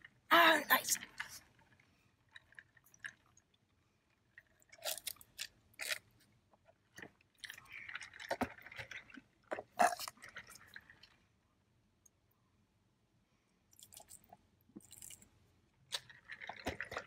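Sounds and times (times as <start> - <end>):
chewing crunchy food: 1.0 - 11.2, 13.8 - 17.0.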